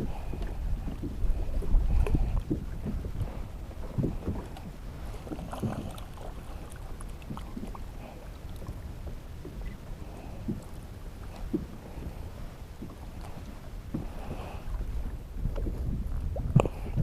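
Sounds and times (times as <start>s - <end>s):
water splashing against kayak hull: 0.0s - 17.0s.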